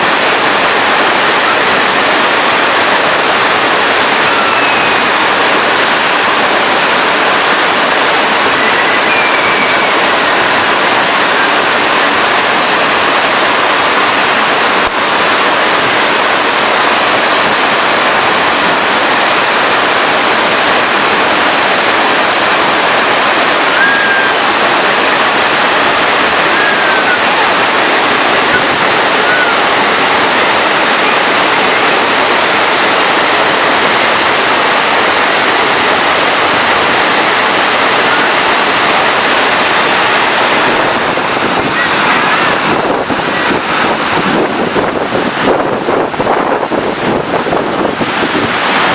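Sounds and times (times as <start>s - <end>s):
waterfall rushing: 0.0s - 48.9s
faint high chirps: 8.6s - 10.0s.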